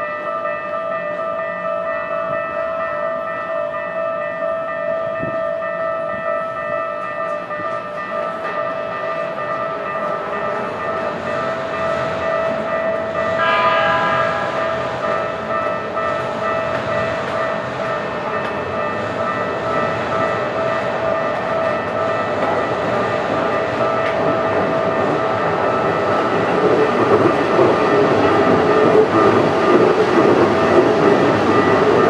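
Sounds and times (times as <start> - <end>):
level crossing bell ringing: 0.0 - 26.1
train running rumble: 2.1 - 32.0
train horn blast: 13.4 - 15.1.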